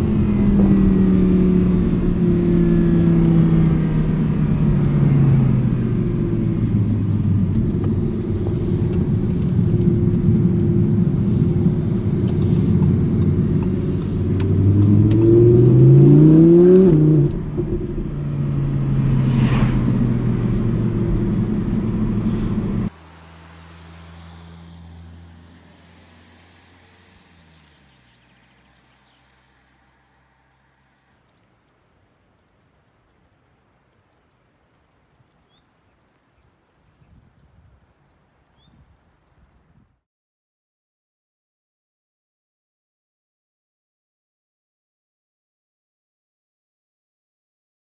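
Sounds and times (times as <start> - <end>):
car engine revving: 0.0 - 31.2.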